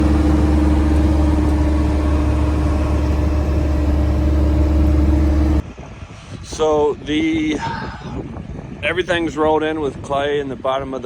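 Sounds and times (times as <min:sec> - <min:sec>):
heavy diesel machine droning: 0:00.0 - 0:05.6.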